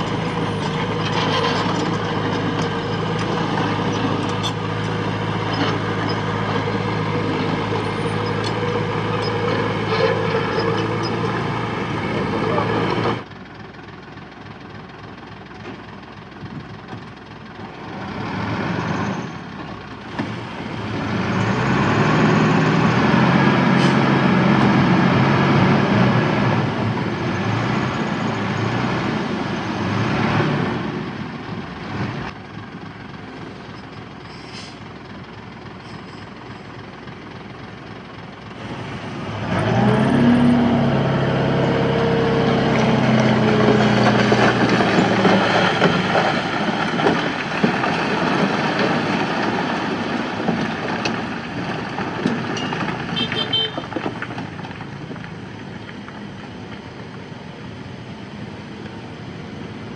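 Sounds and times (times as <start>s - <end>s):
heavy machinery diesel engine revving: 0.0s - 13.3s, 17.7s - 19.5s, 20.2s - 32.4s, 38.6s - 53.2s.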